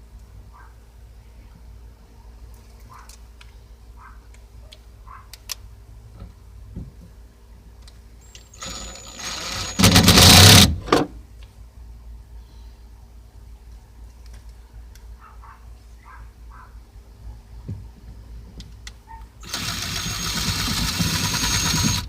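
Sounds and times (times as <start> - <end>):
small electric motor running: 8.6 - 10.7, 19.4 - 22.0.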